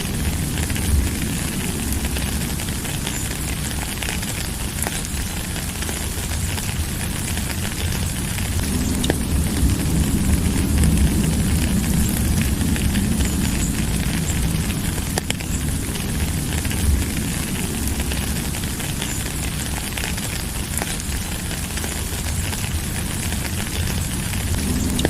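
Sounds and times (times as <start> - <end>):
deep low rumble: 0.0 - 25.0
raindrop clicks: 0.0 - 25.0
steady rain hiss: 0.0 - 25.0.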